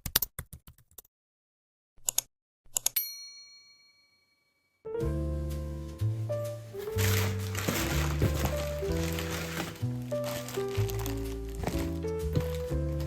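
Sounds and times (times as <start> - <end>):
bell-like ding: 3.0 - 4.8.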